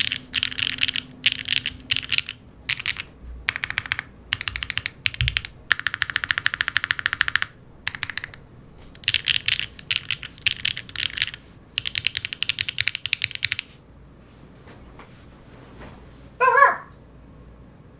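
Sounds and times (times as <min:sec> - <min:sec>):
mechanical keyboard typing: 0:00.0 - 0:13.7.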